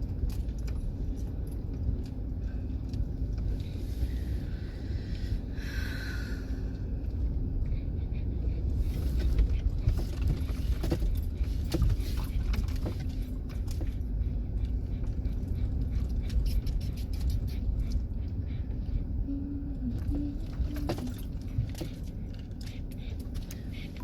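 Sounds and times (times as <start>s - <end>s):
van engine and tyres rumbling: 0.0s - 24.0s.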